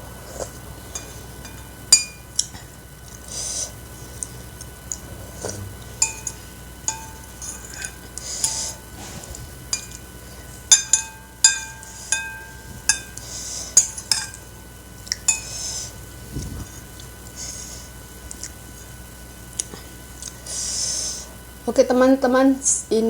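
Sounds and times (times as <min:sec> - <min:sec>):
metal utensils clinking on bowl: 0:00.9 - 0:02.7, 0:06.0 - 0:08.8, 0:09.7 - 0:10.0, 0:10.7 - 0:13.2, 0:13.8 - 0:14.5.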